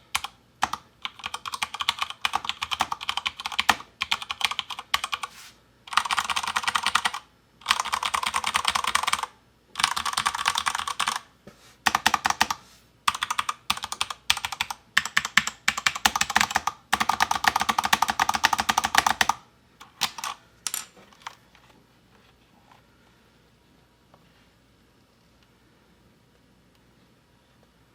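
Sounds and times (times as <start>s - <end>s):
typing on mechanical keyboard: 0.0s - 5.3s, 5.9s - 11.3s, 11.9s - 20.4s.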